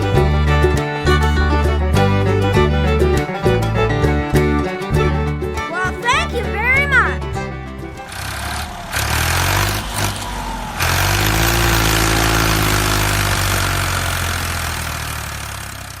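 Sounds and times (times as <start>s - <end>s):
engine running: 7.8s - 16.0s.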